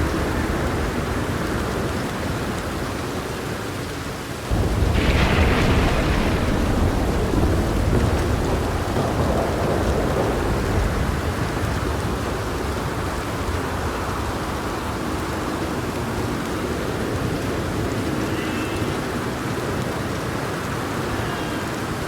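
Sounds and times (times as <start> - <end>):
steady rain: 0.0 - 22.0
low rumble of thunder: 4.5 - 15.4.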